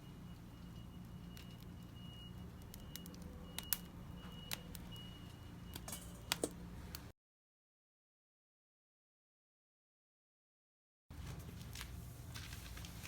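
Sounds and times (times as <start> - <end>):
low steady hum: 0.0 - 7.1.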